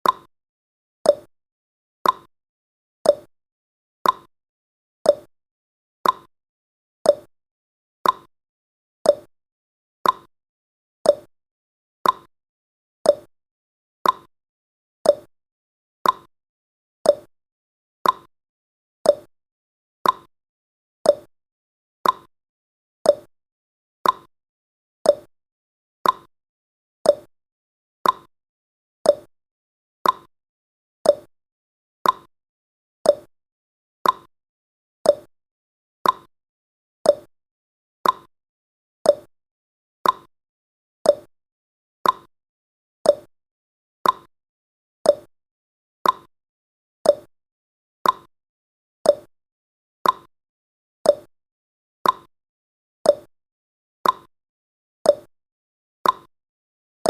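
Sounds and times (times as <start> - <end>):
timer tick-tock: 0.0 - 0.3, 1.0 - 1.3, 2.0 - 2.3, 3.0 - 3.3, 4.0 - 4.3, 5.0 - 5.3, 6.0 - 6.3, 7.0 - 7.3, 8.0 - 8.3, 9.0 - 9.3, 10.0 - 10.3, 11.0 - 11.3, 12.0 - 12.3, 13.0 - 13.3, 14.0 - 14.3, 15.0 - 15.3, 16.0 - 16.3, 17.0 - 17.3, 18.0 - 18.3, 19.0 - 19.3, 20.0 - 20.3, 21.0 - 21.3, 22.0 - 22.3, 23.0 - 23.3, 24.0 - 24.3, 25.0 - 25.3, 26.0 - 26.3, 27.0 - 27.3, 28.0 - 28.3, 29.0 - 29.3, 30.0 - 30.3, 31.0 - 31.3, 32.0 - 32.3, 33.0 - 33.3, 34.0 - 34.3, 35.0 - 35.3, 36.0 - 36.3, 37.0 - 37.3, 38.0 - 38.3, 39.0 - 39.3, 40.0 - 40.3, 41.0 - 41.3, 42.0 - 42.3, 43.0 - 43.3, 44.0 - 44.3, 45.0 - 45.3, 46.0 - 46.3, 47.0 - 47.3, 48.0 - 48.3, 49.0 - 49.3, 50.0 - 50.3, 51.0 - 51.3, 52.0 - 52.3, 53.0 - 53.3, 54.0 - 54.3, 55.0 - 55.3, 56.0 - 56.3.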